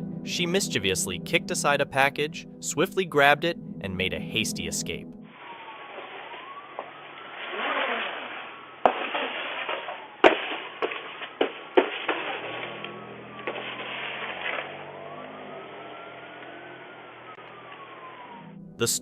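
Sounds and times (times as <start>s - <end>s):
street traffic passing: 4.8s - 19.0s.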